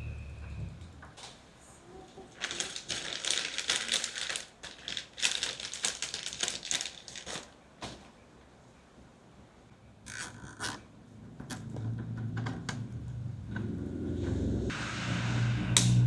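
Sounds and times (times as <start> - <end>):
computer parts clicking and rustling: 2.4 - 7.6.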